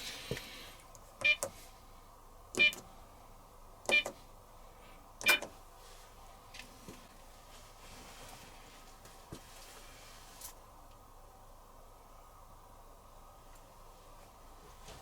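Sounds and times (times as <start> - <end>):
short beeps: 2.6 - 2.8, 3.9 - 4.2.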